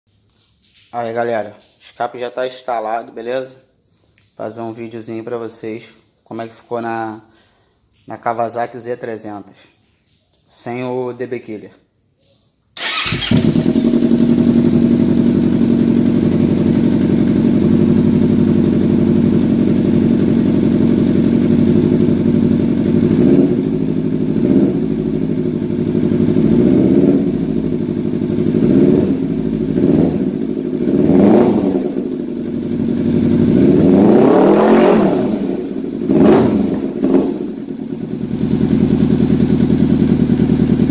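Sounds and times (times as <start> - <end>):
motorcycle engine idling and revving: 12.8 - 40.9.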